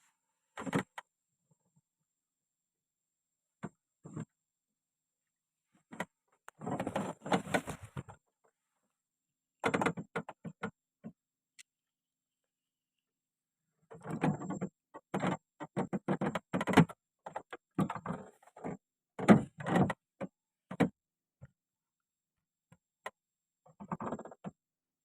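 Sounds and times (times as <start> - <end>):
objects clattering and knocking: 6.6 - 8.2.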